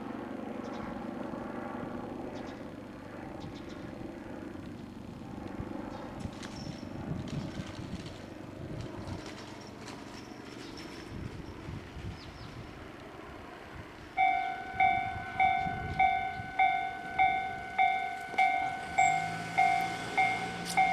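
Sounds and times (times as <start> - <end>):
train rumble: 14.1 - 20.9
thin high tones: 14.2 - 20.9
wheels clicking over rail joints: 14.2 - 20.9.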